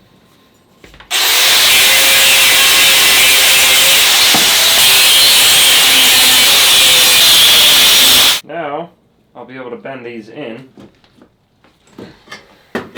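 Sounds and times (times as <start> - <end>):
power tool cutting metal: 1.1 - 8.4.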